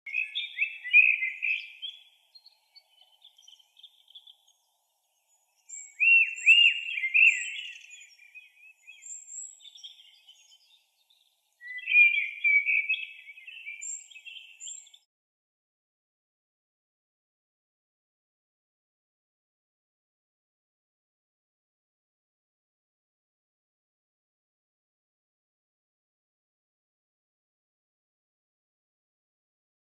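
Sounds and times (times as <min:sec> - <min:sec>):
bird singing chirps and trills: 0:00.1 - 0:15.1
faint thin bird tweets: 0:00.1 - 0:15.1.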